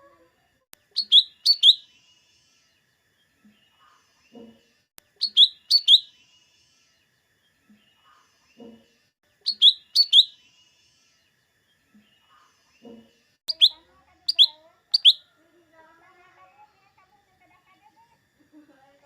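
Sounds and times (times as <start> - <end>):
bird whistling downward notes: 1.0 - 1.8, 5.2 - 6.1, 9.5 - 10.4.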